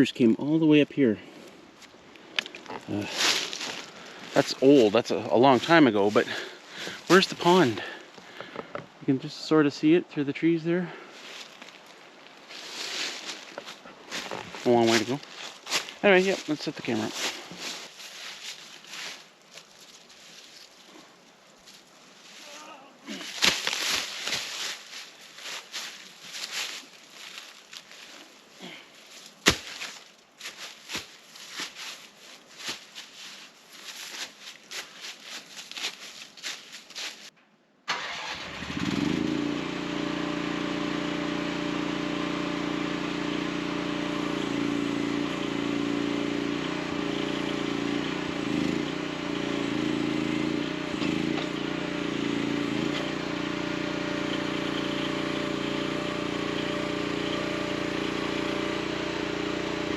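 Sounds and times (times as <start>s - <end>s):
excavator engine idling: 39.6s - 59.9s.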